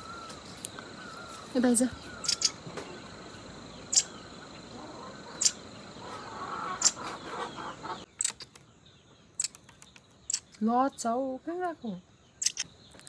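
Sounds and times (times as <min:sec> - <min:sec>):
bird sharp calls: 0:00.0 - 0:08.7, 0:12.3 - 0:13.0.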